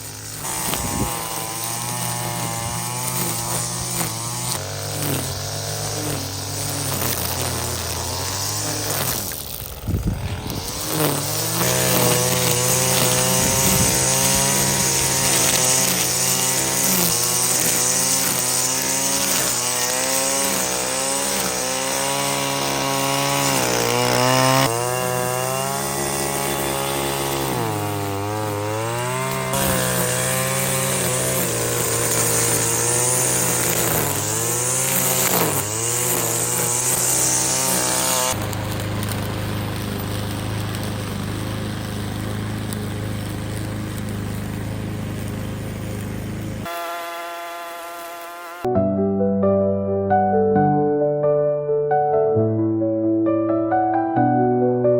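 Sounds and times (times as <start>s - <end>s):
small petrol engine running hard: 0.0s - 48.7s.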